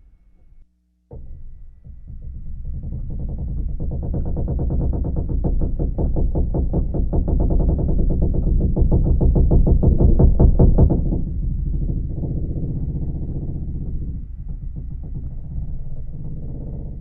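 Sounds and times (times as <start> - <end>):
deep rumble: 0.0 - 17.0
ship deck creaking: 12.4 - 17.0.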